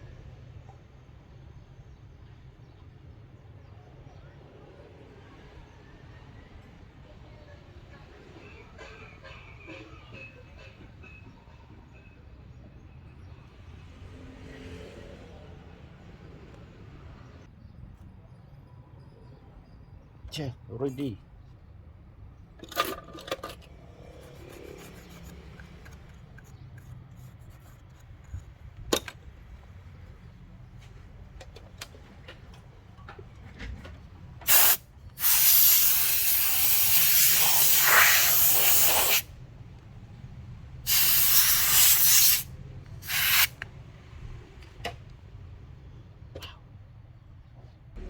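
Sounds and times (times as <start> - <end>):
aerosol spray can hissing: 34.5 - 39.3, 40.9 - 43.6.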